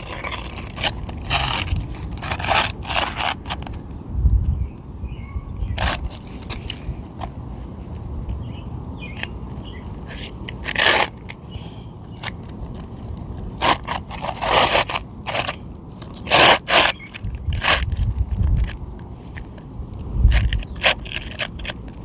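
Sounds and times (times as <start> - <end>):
shingle scraping and rustling: 0.0 - 4.0, 5.6 - 22.0
steady low rumble: 0.0 - 16.0.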